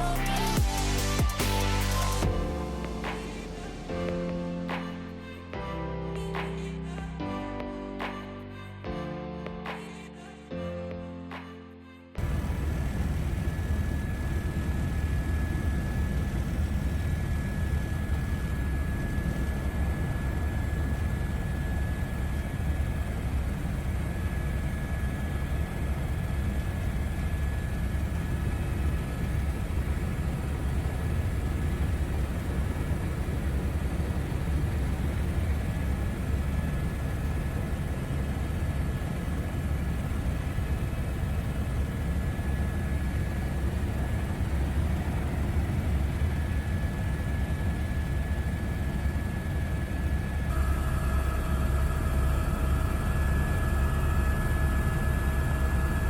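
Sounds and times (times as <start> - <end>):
aircraft engine drone: 0.0 - 11.6, 12.2 - 56.0
thin steady high tone: 39.4 - 56.0.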